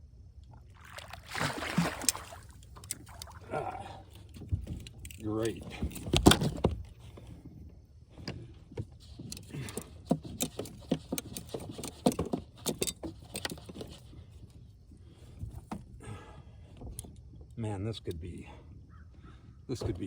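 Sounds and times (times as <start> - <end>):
net and lure clattering: 1.8 - 7.2, 9.1 - 14.5
clicks and knocks in a boat: 1.8 - 20.0.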